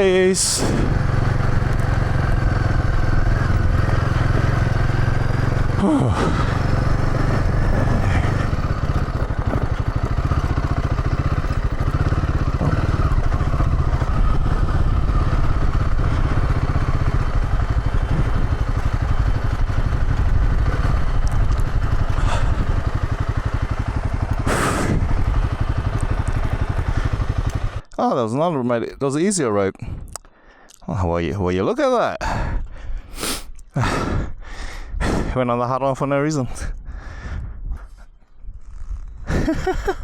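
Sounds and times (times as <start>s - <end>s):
motorcycle engine at low speed: 0.0s - 28.0s, 36.4s - 40.0s.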